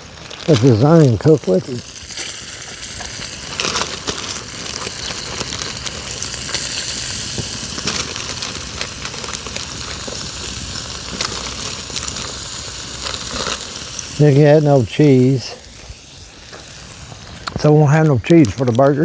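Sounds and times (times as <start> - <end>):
meat sizzling in a skillet: 0.0 - 18.5
fat popping: 0.2 - 14.2.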